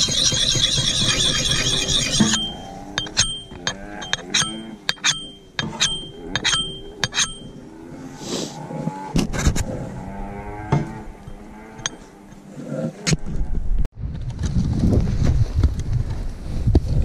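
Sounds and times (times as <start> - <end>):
metal tool clinking on stony earth: 0.0 - 7.6, 11.2 - 12.1
dense scraping: 0.0 - 12.7.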